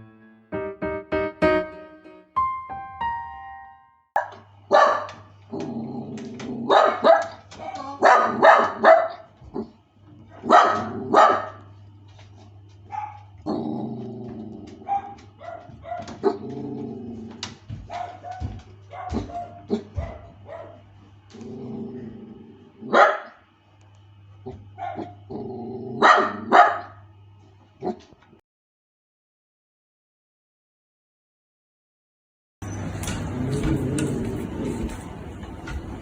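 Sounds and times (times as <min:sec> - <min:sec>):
piano notes: 0:00.0 - 0:04.1, 0:32.6 - 0:36.0
dog barking: 0:04.2 - 0:05.3, 0:06.6 - 0:09.7, 0:10.3 - 0:11.7, 0:12.9 - 0:13.3, 0:14.8 - 0:16.4, 0:17.9 - 0:20.8, 0:22.9 - 0:23.4, 0:24.5 - 0:25.2, 0:26.0 - 0:27.0
dog growling: 0:05.5 - 0:07.0, 0:13.4 - 0:15.2, 0:16.2 - 0:17.6, 0:21.3 - 0:23.0, 0:24.4 - 0:26.5, 0:33.1 - 0:36.0.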